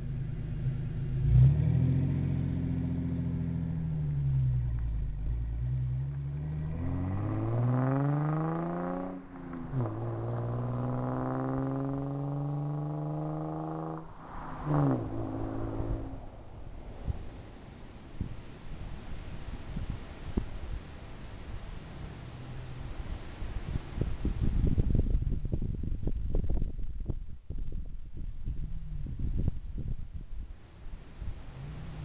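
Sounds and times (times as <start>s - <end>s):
car engine exhaust revving: 1.2s - 17.6s.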